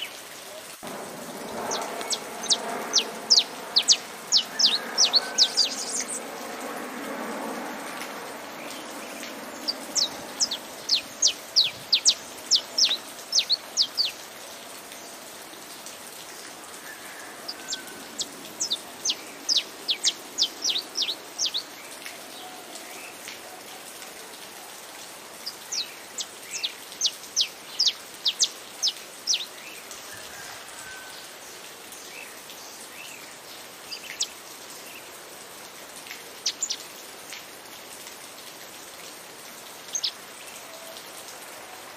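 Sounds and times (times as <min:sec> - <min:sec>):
steady rain: 0:00.0 - 0:41.9
finch singing: 0:01.5 - 0:06.2, 0:08.7 - 0:14.2, 0:17.7 - 0:21.8, 0:26.5 - 0:29.6.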